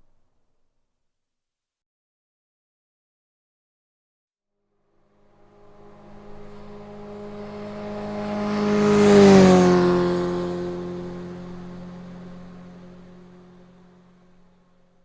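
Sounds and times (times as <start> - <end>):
motorcycle passing by: 4.9 - 15.0.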